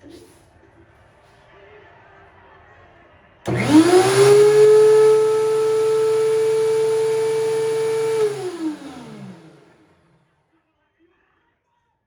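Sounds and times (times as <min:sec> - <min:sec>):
thickness planer whining: 0:03.5 - 0:09.8.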